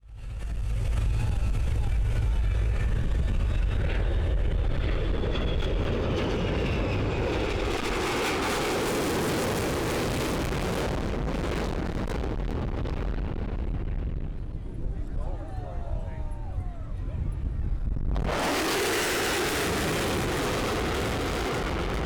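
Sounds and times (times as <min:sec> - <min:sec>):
jet roar flying past: 0:00.6 - 0:22.0.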